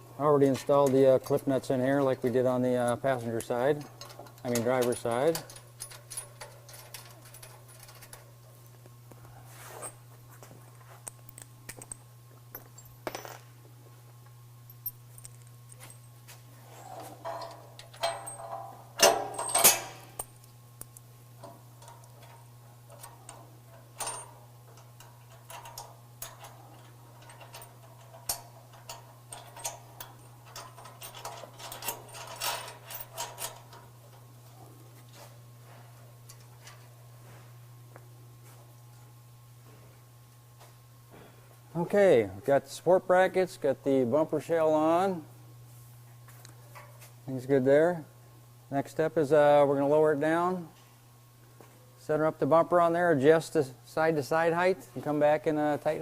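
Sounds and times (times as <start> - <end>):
steady low hum: 0.0 - 56.0
metal parts and tools clanking: 0.5 - 8.4, 16.8 - 20.4, 21.4 - 34.2.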